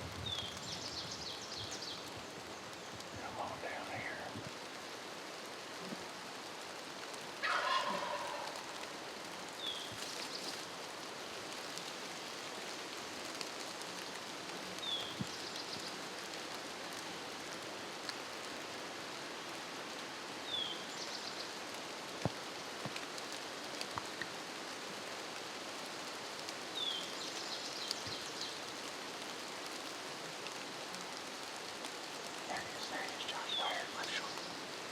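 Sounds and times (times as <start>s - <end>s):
background hiss: 0.0s - 34.9s
songbird singing: 0.2s - 4.5s, 7.4s - 10.6s, 14.8s - 16.0s, 20.4s - 21.6s, 26.7s - 28.7s, 32.2s - 34.9s
turkey gobbling: 7.4s - 8.8s.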